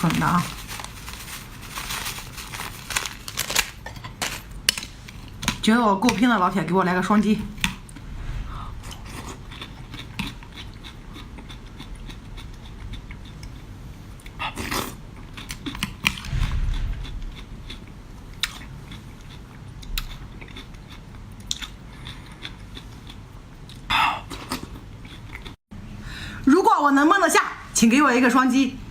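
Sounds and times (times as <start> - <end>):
person chewing seafood: 8.9 - 16.1, 17.3 - 25.6.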